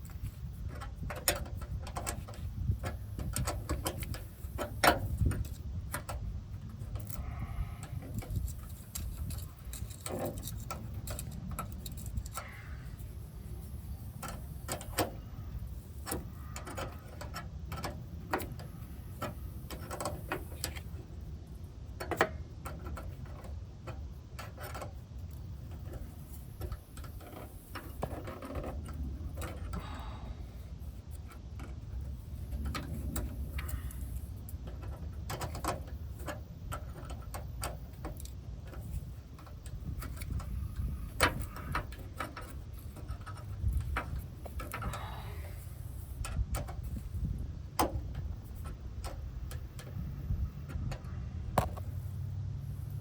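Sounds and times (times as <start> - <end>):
metal clicks and taps of hand tools: 0.0 - 6.2, 7.0 - 12.6, 16.0 - 20.9, 22.0 - 29.8
low steady rumble: 0.0 - 53.0.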